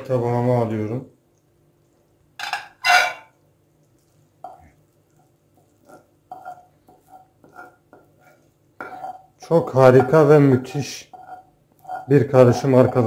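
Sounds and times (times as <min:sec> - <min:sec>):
kitchenware clattering: 0:02.4 - 0:03.4, 0:05.8 - 0:13.0
utensil scraping a pan: 0:02.4 - 0:03.4, 0:05.5 - 0:13.0.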